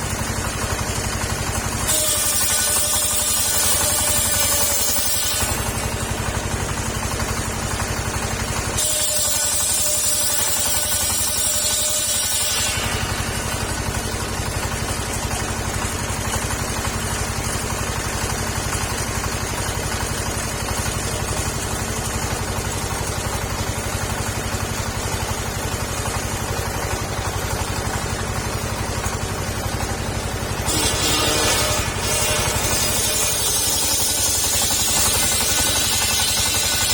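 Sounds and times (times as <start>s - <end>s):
saw blade cutting wood hiss: 1.8s - 6.0s, 8.8s - 14.6s, 30.5s - 36.9s
petrol engine running: 20.9s - 36.9s.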